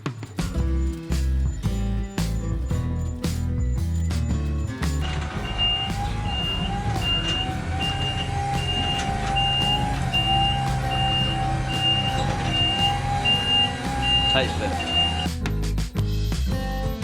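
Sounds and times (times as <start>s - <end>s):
motion alarm beeping: 0.6s - 15.4s, 16.0s - 17.0s
lift motor whine: 5.0s - 15.4s.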